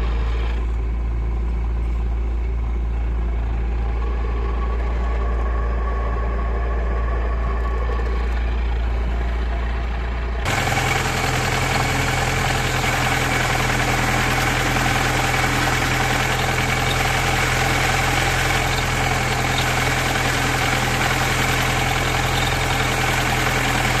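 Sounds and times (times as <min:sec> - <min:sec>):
car engine running: 0:00.0 - 0:24.0
steady whine: 0:00.0 - 0:24.0.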